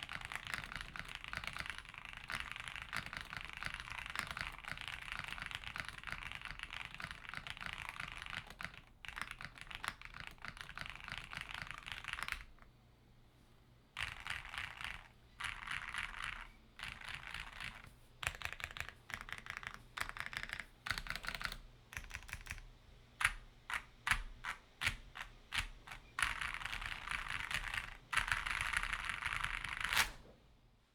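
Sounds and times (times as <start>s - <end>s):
typing on mechanical keyboard: 0.0s - 12.7s, 14.0s - 30.1s.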